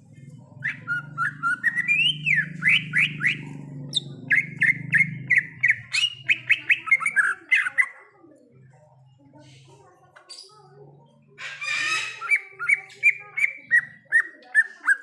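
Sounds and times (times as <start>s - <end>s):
bird singing whistled notes: 0.6s - 7.2s.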